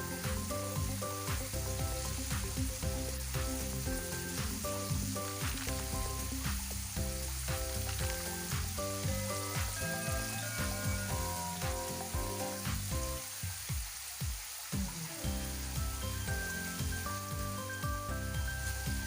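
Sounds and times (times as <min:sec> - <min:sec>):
background music with beat: 0:00.0 - 0:19.0
fries sizzling in hot oil: 0:00.0 - 0:19.0.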